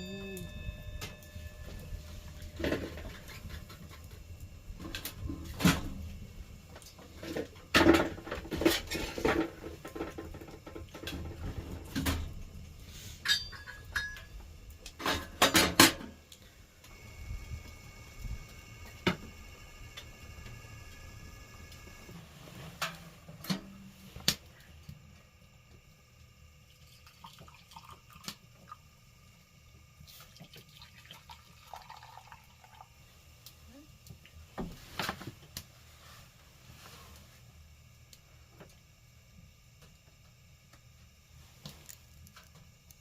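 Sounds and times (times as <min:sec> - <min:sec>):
faint steady hum: 0:00.0 - 0:43.0
metal objects clanking: 0:13.2 - 0:14.4.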